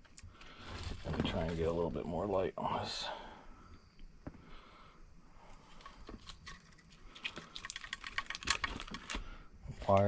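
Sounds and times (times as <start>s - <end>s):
packaging rustles and clicks: 5.8s - 9.2s
sharp plastic clicks: 7.3s - 9.2s.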